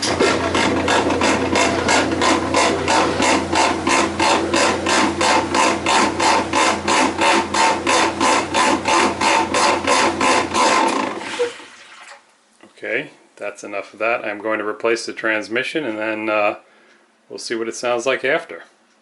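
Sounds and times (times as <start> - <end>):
washing machine grinding in spin: 0.0 - 12.1.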